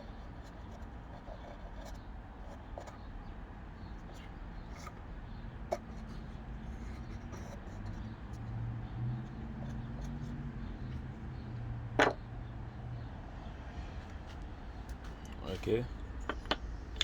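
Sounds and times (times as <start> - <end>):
sharp knock of object set down: 12.0 - 12.2.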